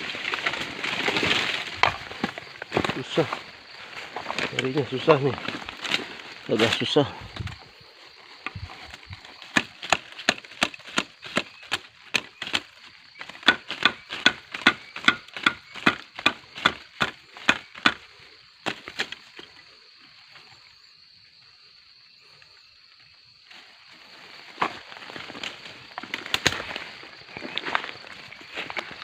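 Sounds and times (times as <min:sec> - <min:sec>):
chopping bamboo: 0:09.4 - 0:19.2.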